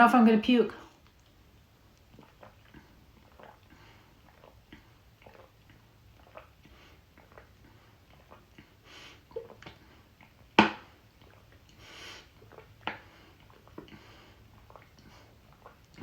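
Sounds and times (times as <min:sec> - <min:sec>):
person gulping and swallowing: 0:01.0 - 0:16.0.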